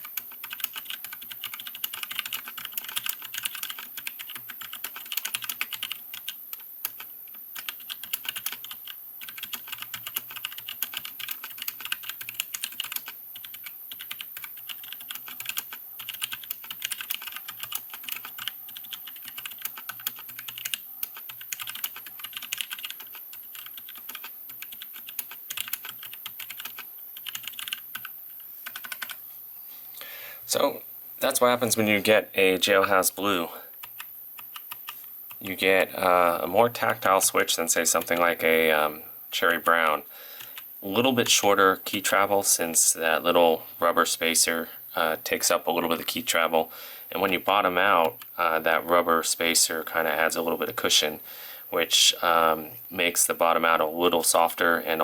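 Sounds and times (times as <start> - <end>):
soft mechanical keyboard typing: 0.0 - 29.2, 33.8 - 35.4.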